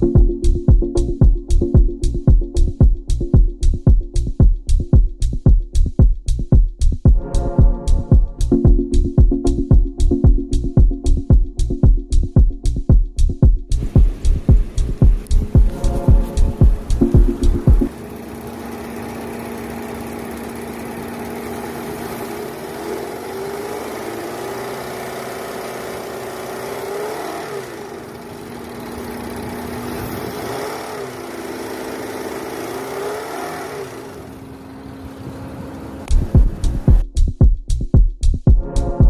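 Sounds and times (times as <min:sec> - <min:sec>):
car engine running: 0:12.7 - 0:37.0.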